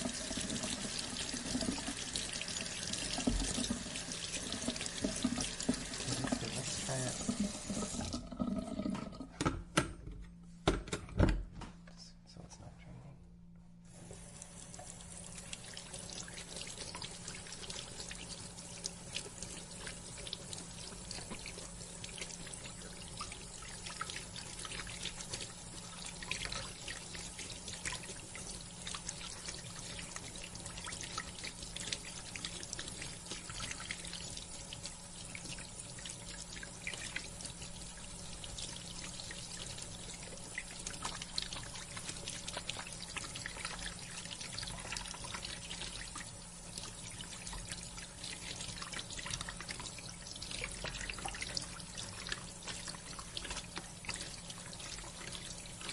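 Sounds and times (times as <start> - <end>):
faucet water into sink: 0.0 - 9.6, 13.9 - 55.9.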